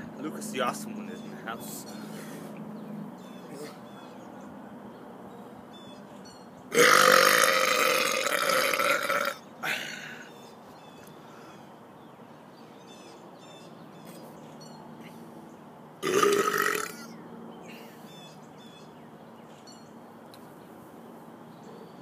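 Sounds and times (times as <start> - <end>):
man burping: 6.7 - 10.2, 16.0 - 17.1.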